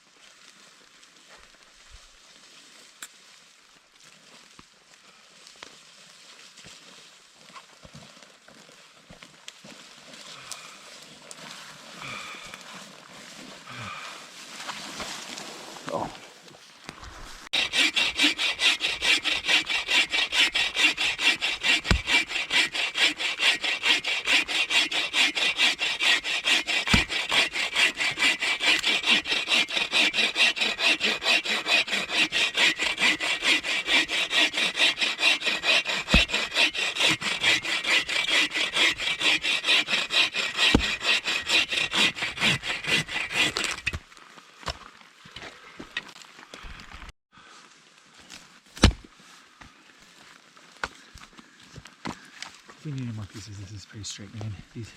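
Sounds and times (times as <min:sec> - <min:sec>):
hand saw cutting wood: 0:17.5 - 0:44.0.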